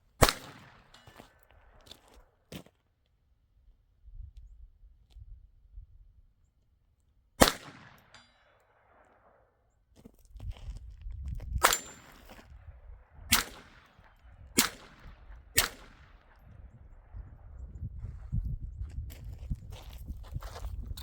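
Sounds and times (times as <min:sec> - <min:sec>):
gunshots: 0:00.2 - 0:01.0, 0:07.4 - 0:08.2, 0:11.6 - 0:12.3, 0:13.3 - 0:16.4.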